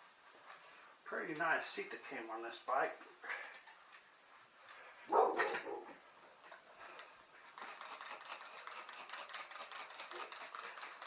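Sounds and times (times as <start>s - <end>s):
rag scrubbing bicycle frame: 7.4s - 11.0s.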